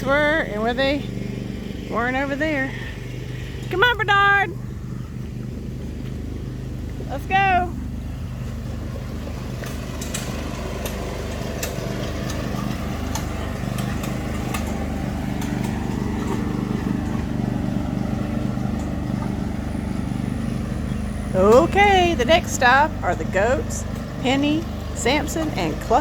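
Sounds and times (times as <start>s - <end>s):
vehicle engine running: 0.0s - 26.0s
sharp clicks and rattles: 8.9s - 19.6s.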